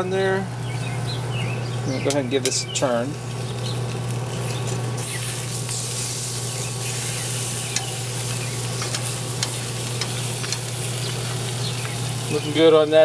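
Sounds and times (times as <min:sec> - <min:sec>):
meat sizzling on a grill: 0:00.0 - 0:13.0.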